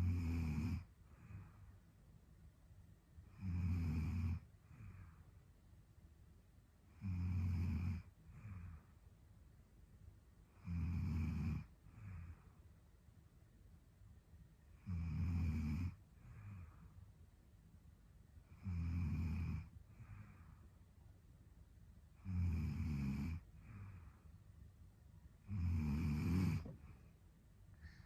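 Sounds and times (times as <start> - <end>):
woman snoring: 0.0 - 1.4, 3.3 - 4.5, 7.0 - 8.7, 10.6 - 12.3, 14.8 - 16.6, 18.5 - 20.3, 22.2 - 24.0, 25.4 - 26.8
soft breath: 1.0 - 2.1, 4.5 - 5.6, 8.2 - 9.2, 11.8 - 12.9, 16.0 - 17.2, 19.6 - 21.0, 23.4 - 24.6, 26.3 - 28.0.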